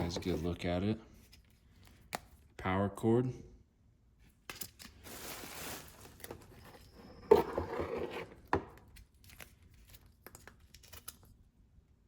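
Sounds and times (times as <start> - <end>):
plastic packaging rustling: 4.7 - 7.5.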